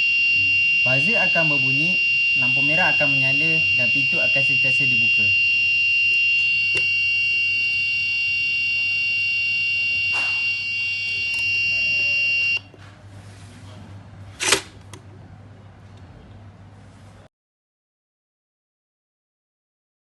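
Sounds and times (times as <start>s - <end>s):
buzzer alarm tone: 0.0s - 12.7s.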